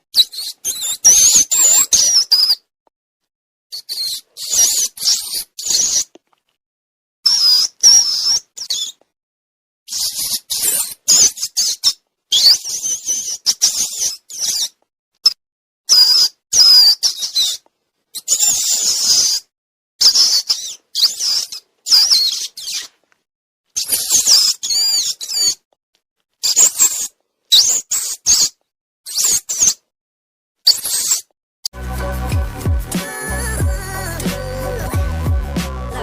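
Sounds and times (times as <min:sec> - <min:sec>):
rodent squeaks: 0:00.1 - 0:02.7, 0:03.7 - 0:06.2, 0:07.2 - 0:09.0, 0:09.9 - 0:22.9, 0:23.8 - 0:25.6, 0:26.4 - 0:29.9, 0:30.6 - 0:31.3.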